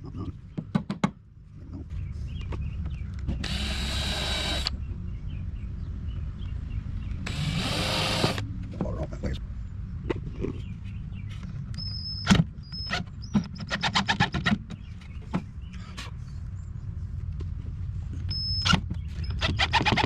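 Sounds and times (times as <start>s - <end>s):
steady low hum: 0.0s - 13.3s
cordless drill whine: 3.4s - 4.7s, 7.3s - 8.4s.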